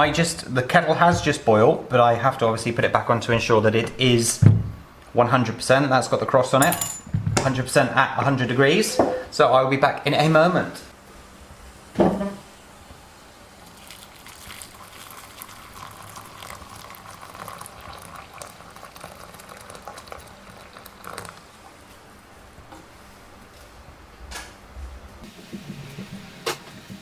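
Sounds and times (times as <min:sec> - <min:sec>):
kettle water rumbling and crackling: 0:13.5 - 0:22.8, 0:25.0 - 0:27.0.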